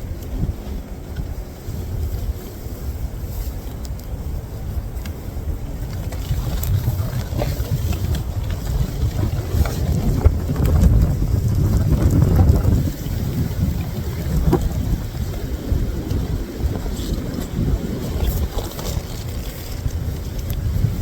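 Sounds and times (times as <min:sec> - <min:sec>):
faint clicks and rustles: 0:00.0 - 0:21.0
wind buffeting microphone: 0:00.0 - 0:21.0.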